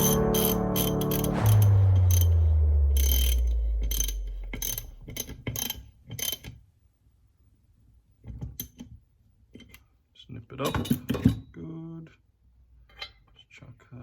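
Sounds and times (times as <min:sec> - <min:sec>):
low hum: 0:00.0 - 0:05.8.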